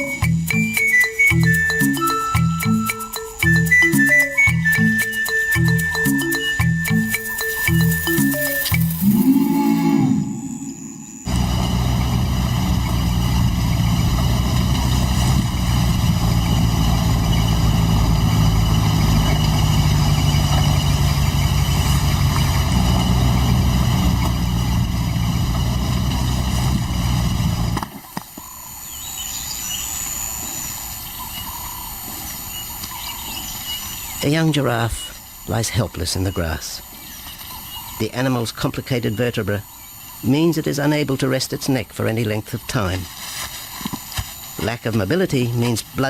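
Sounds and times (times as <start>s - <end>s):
vehicle engine humming: 0.0s - 27.9s.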